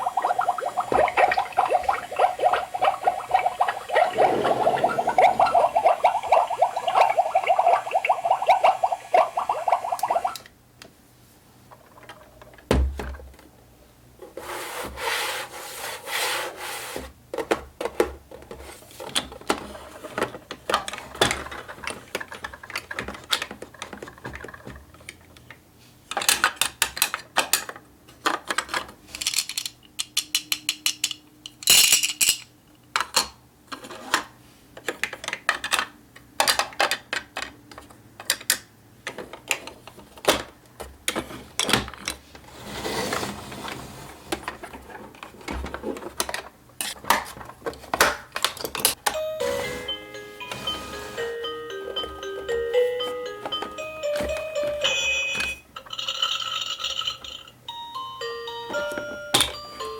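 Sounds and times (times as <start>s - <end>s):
plastic toy parts clicking: 26.1s - 32.4s.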